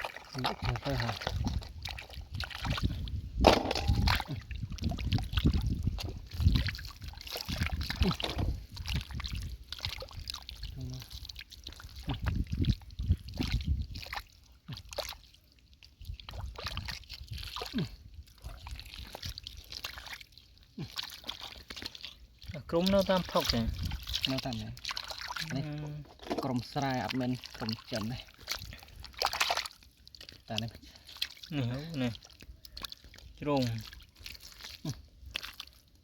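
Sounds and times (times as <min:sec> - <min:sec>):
hands sloshing in mud and water: 0:00.0 - 0:36.0.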